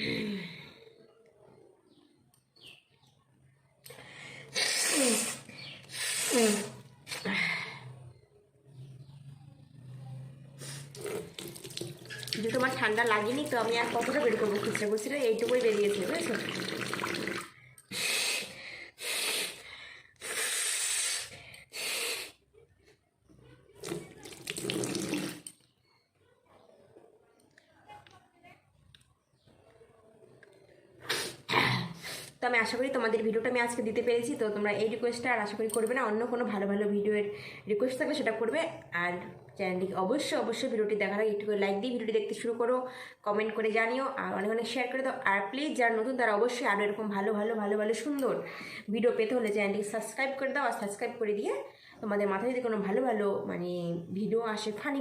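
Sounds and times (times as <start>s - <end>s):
woman blowing her nose: 4.5s - 6.8s, 17.9s - 19.6s, 20.2s - 22.4s
water splashing into a basin: 10.9s - 17.6s, 23.8s - 25.5s.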